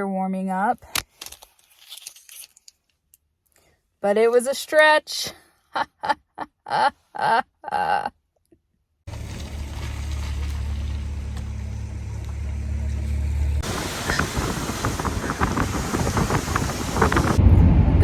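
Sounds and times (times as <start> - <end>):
car driving on road: 9.1 - 18.0
rough rushing noise with crackles: 9.1 - 18.0.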